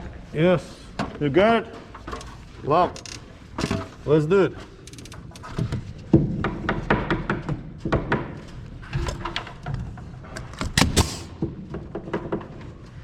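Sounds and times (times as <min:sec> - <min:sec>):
wooden boards knocking: 0:06.1 - 0:08.4.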